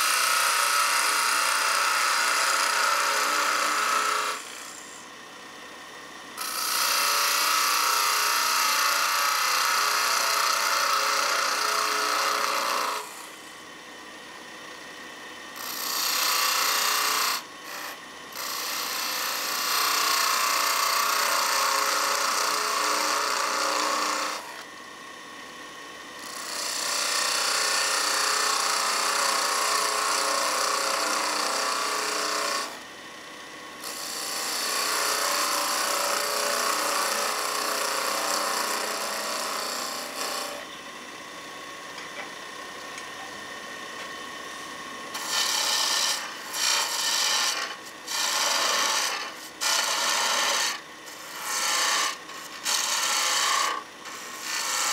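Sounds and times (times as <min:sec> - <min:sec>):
turning tool cutting wood on lathe: 0:00.0 - 0:05.0, 0:06.4 - 0:13.4, 0:15.6 - 0:24.7, 0:26.2 - 0:32.8, 0:33.8 - 0:40.7, 0:45.1 - 0:54.9
lathe humming: 0:00.0 - 0:05.1, 0:06.4 - 0:13.8, 0:15.6 - 0:24.7, 0:26.2 - 0:33.2, 0:33.8 - 0:54.9.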